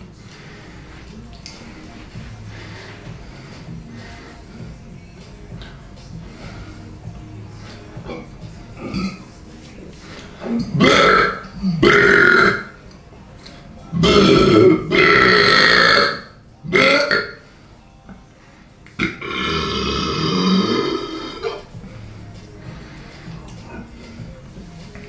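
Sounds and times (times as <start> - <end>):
person belching loudly: 8.1 - 9.2, 10.6 - 12.8, 13.9 - 17.4, 19.0 - 21.6.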